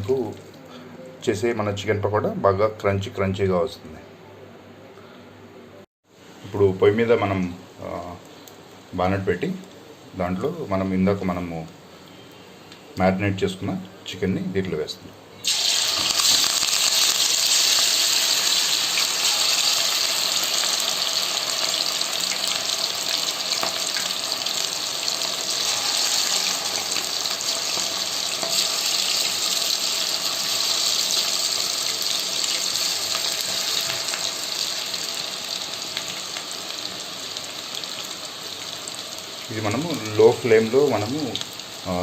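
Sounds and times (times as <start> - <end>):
food deep-frying in hot oil: 15.4 - 42.0.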